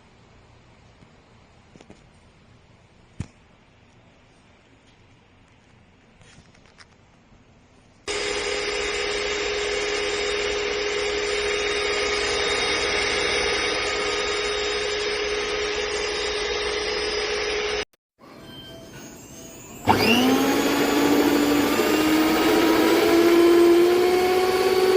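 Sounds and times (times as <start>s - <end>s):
stand mixer motor whining: 8.1s - 17.8s, 19.5s - 24.9s.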